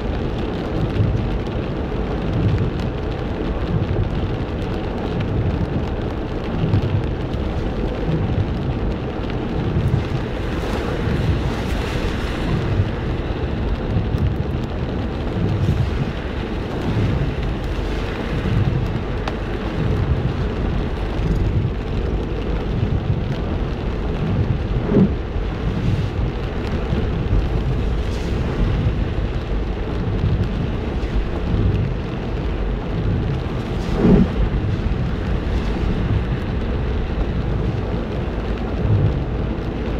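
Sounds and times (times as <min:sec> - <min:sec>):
heavy rain: 0:00.0 - 0:39.9
low rumble: 0:00.0 - 0:39.9.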